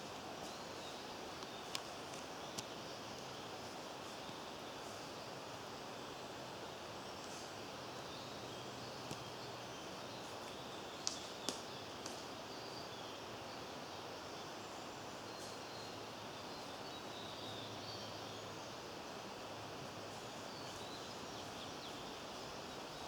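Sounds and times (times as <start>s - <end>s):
steady background hiss: 0.0s - 23.0s
distant bird calls: 20.0s - 23.0s.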